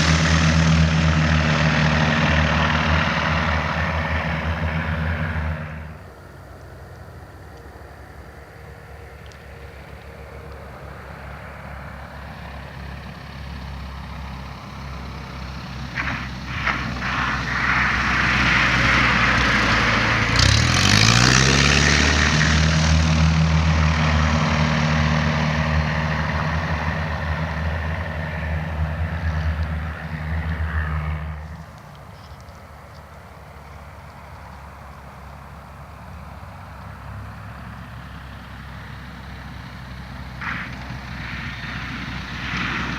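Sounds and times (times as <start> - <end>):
airplane piston engine: 0.0 - 36.5, 38.4 - 42.9
rushing hiss: 15.8 - 22.8.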